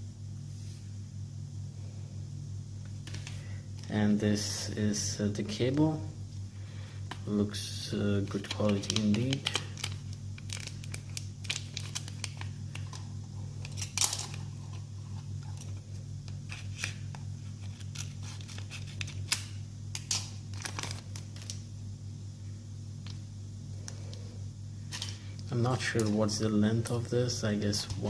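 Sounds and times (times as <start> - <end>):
steady low hum: 0.0 - 28.0
plastic packaging crinkling: 8.2 - 21.7, 24.8 - 26.4.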